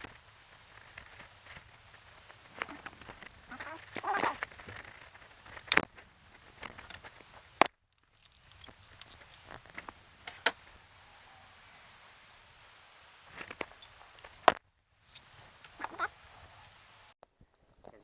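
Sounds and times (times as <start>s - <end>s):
sharp clicks and light knocks: 0.0s - 10.8s.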